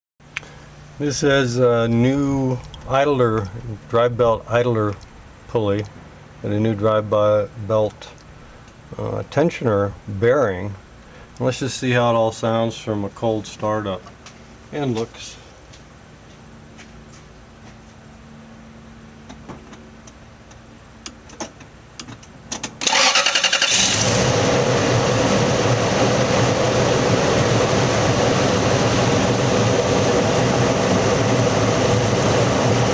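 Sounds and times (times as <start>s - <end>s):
engine starter cranking: 22.8s - 24.4s.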